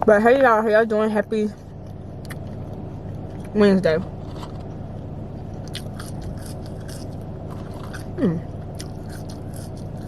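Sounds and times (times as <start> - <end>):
low car interior hum: 0.0 - 10.0
eating clicks and crunches: 5.5 - 10.0.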